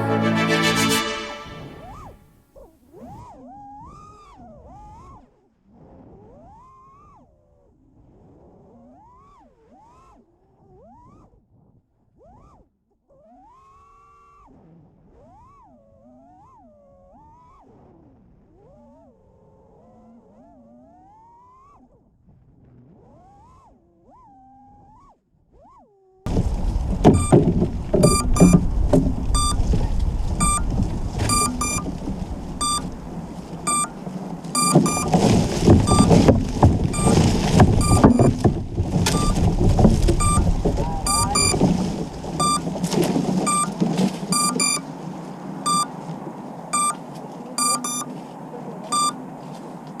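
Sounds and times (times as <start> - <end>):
short high electronic beeps: 32.6 - 32.8, 33.7 - 33.9, 44.4 - 44.8, 45.7 - 45.9, 46.8 - 47.0, 47.6 - 48.1, 48.9 - 49.2.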